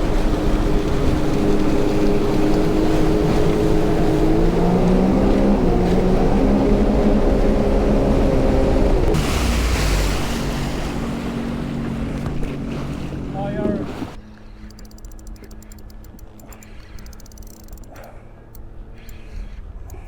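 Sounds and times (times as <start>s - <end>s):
water spray rushing: 0.0s - 14.2s
jet ski engine running: 0.0s - 20.0s.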